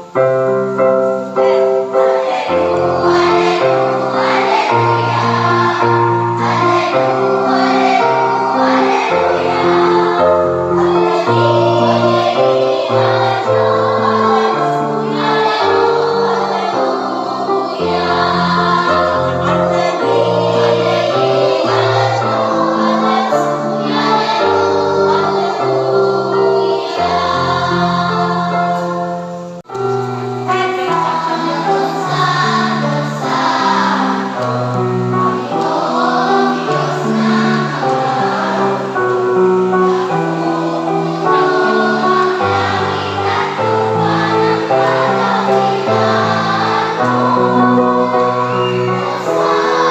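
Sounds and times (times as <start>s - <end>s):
choir singing sustained notes: 0.0s - 49.9s.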